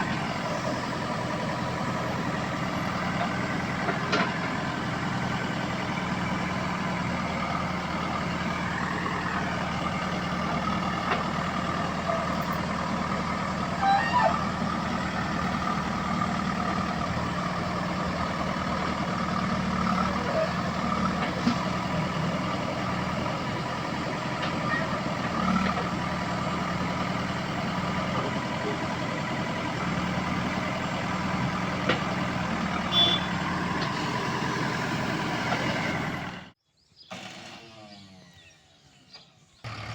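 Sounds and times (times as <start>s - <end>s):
diesel engine running: 0.0s - 38.5s, 39.6s - 39.9s
brief squeak: 13.8s - 14.5s.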